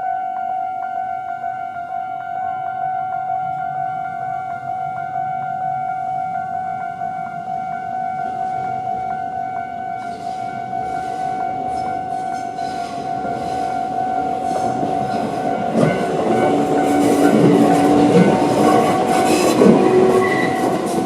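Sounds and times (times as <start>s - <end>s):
level-crossing alarm bell: 0.0s - 21.0s
train rumble: 3.3s - 21.0s
wheels clacking over rail joints: 10.0s - 21.0s.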